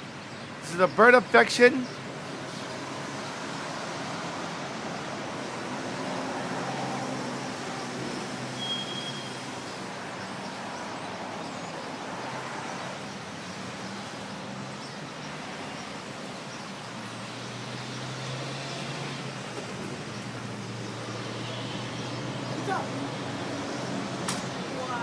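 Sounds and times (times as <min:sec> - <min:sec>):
high whistle-like tone: 0:08.6 - 0:09.3.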